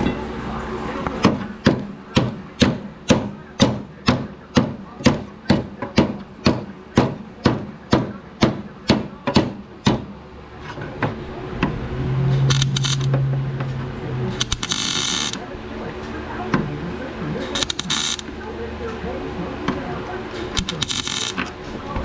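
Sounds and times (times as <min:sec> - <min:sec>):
low hum: 0:10.3 - 0:19.5
welding crackle: 0:12.5 - 0:13.1, 0:14.3 - 0:15.4, 0:17.6 - 0:18.3, 0:20.6 - 0:21.6.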